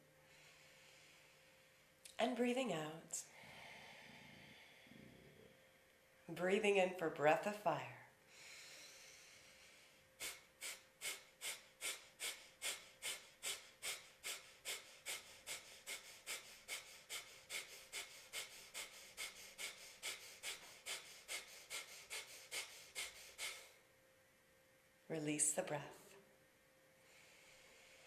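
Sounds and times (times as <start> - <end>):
in-breath: 0.2 - 2.0, 3.2 - 5.9, 8.3 - 23.8, 27.0 - 28.0
sharp nasal exhalations: 8.4 - 23.8.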